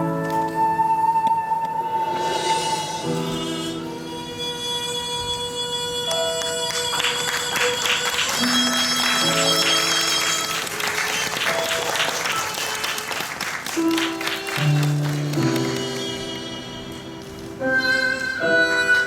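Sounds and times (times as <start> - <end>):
instrumental music with held notes: 0.0 - 19.0
audience applauding: 6.4 - 16.4.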